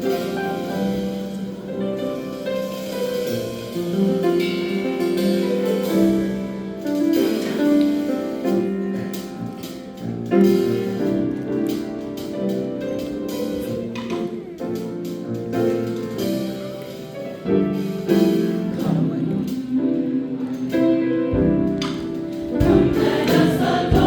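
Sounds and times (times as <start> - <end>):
ensemble playing held notes: 16.9 - 24.0
sharp percussive strikes: 21.4 - 24.0.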